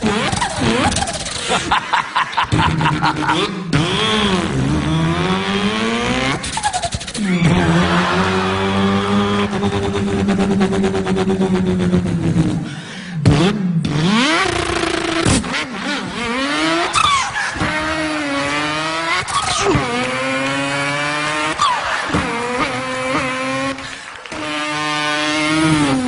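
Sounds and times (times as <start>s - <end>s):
man imitating car engine: 0.0s - 26.0s.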